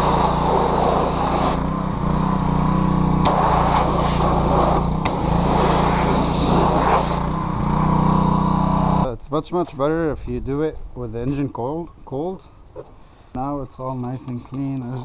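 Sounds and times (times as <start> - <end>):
pressure washer spraying: 0.0 - 1.7, 3.2 - 7.3.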